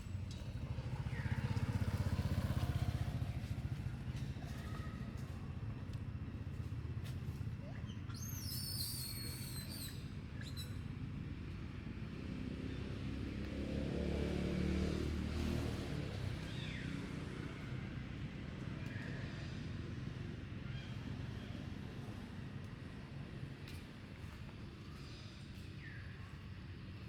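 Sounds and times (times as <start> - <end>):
vehicle engine hum passing: 0.0 - 5.7, 11.8 - 27.0.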